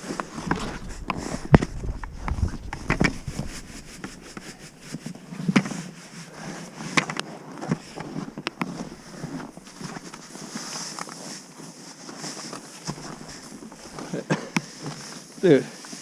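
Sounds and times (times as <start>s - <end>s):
background hiss: 0.0s - 16.0s
knocks and clicks: 0.2s - 4.6s.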